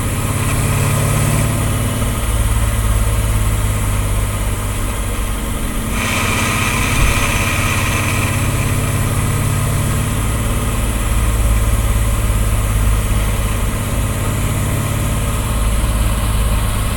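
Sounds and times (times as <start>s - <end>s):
engine droning: 0.0s - 16.9s
high whir: 4.2s - 16.9s
transmission grinding: 5.8s - 13.4s.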